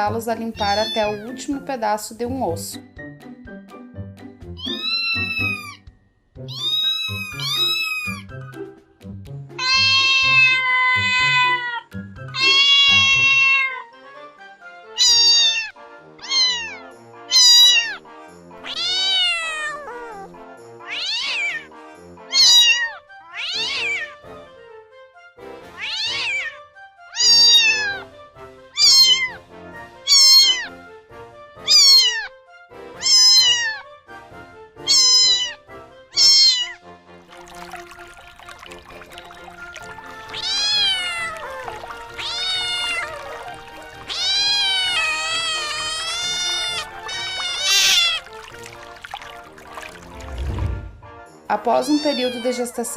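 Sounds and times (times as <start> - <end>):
cat meowing: 0.6 - 1.4, 4.6 - 8.3, 9.6 - 14.0, 15.0 - 18.0, 18.6 - 21.7, 22.3 - 24.2, 25.8 - 28.1, 28.8 - 29.4, 30.1 - 30.8, 31.6 - 32.3, 32.9 - 33.9, 34.8 - 36.8, 39.3 - 50.0, 51.8 - 52.8.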